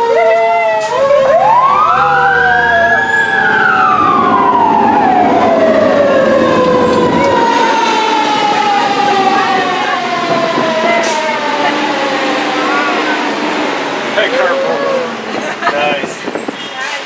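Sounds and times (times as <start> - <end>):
mechanical siren winding up and down: 0.0 - 9.6.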